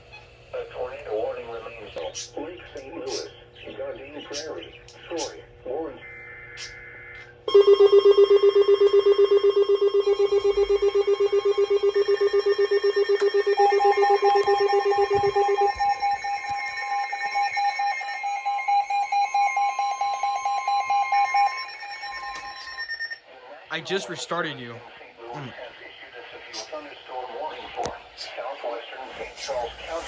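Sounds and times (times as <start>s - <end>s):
rapid electronic alarm beeping: 2.0s - 23.2s
steady electronic tones: 6.0s - 23.2s.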